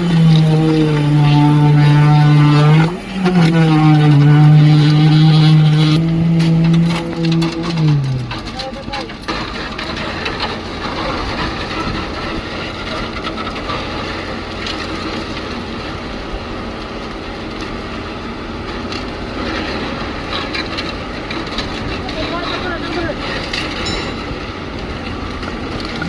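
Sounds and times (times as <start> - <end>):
concrete pump machinery rumble: 0.0 - 26.0
steady machine hum: 0.0 - 26.0.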